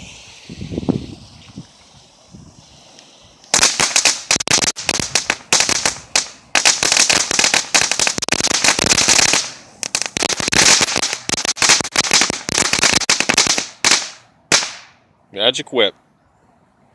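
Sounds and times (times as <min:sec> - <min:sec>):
crackling firework pops: 0:02.9 - 0:15.0.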